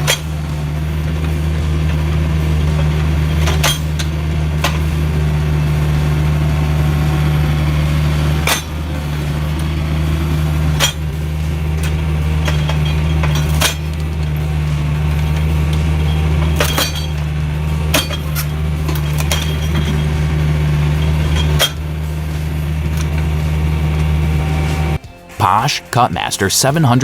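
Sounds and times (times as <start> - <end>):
log splitter engine droning: 0.0 - 25.4.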